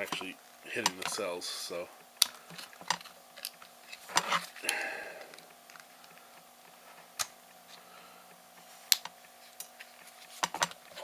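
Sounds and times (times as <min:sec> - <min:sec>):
knife scraping plastic: 0:02.4 - 0:04.7.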